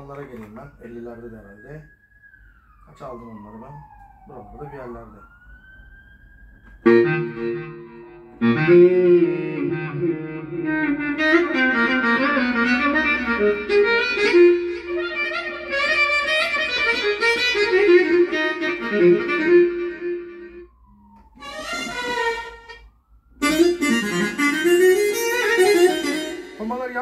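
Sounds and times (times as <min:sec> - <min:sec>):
keyboard melody over chords: 0:06.8 - 0:20.9, 0:21.5 - 0:27.0.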